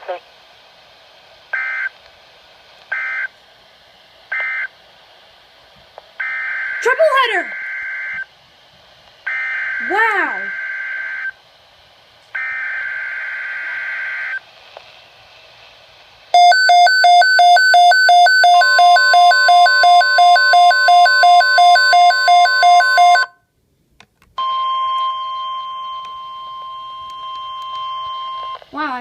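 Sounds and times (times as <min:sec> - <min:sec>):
rapid alarm beeping: 0:16.4 - 0:23.3
steady warning alarm tone: 0:16.4 - 0:23.3, 0:24.4 - 0:28.6.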